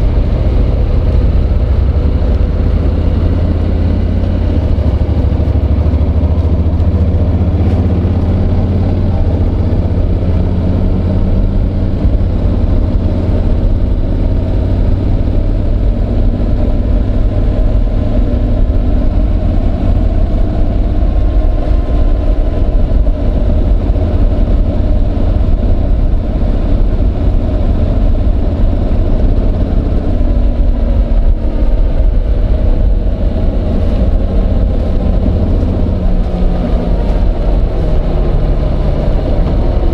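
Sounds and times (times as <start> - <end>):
motorcycle engine rumble: 0.0 - 39.9.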